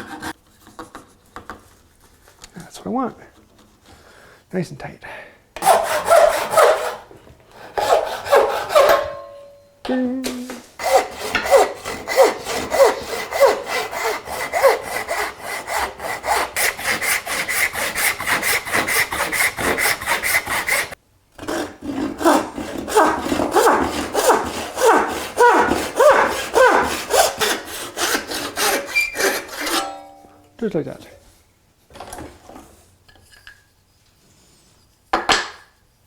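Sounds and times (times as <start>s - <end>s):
hand saw cutting wood: 0.0s - 0.9s, 5.6s - 9.2s, 10.5s - 30.0s.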